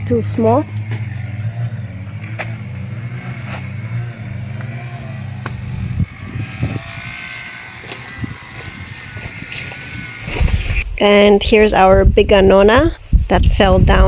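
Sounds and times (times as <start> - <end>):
motor humming: 0.0 - 12.4.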